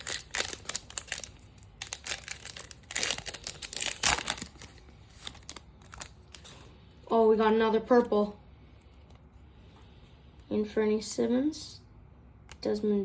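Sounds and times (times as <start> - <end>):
wrapper crinkling and tearing: 0.0 - 6.7.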